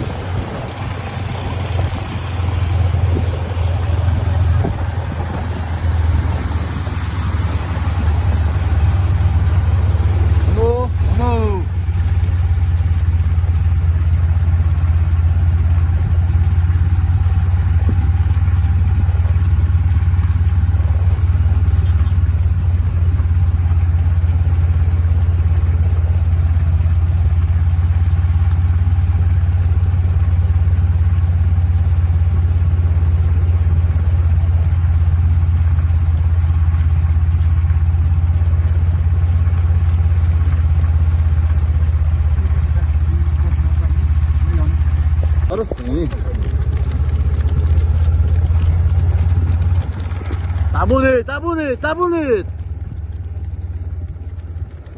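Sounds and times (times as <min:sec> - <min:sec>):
vehicle engine running: 0:00.0 - 0:54.9.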